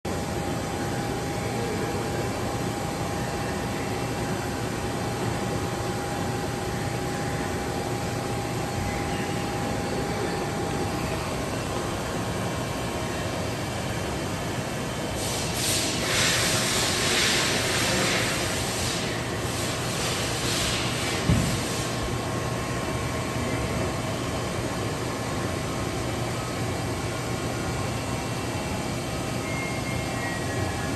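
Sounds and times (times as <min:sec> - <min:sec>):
lathe humming with whine: 0:00.1 - 0:30.9
loud hiss: 0:15.2 - 0:22.1.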